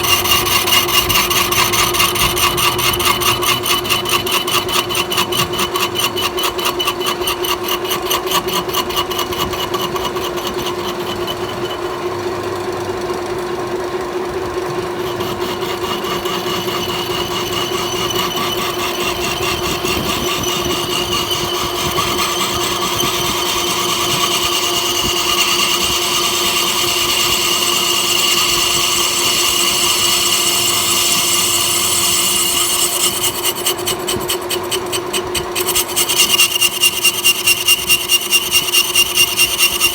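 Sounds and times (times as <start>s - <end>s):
cutting tool scraping metal: 0.0s - 12.2s, 14.8s - 39.9s
metal lathe humming: 0.0s - 39.9s
fast even rattle: 14.9s - 39.9s.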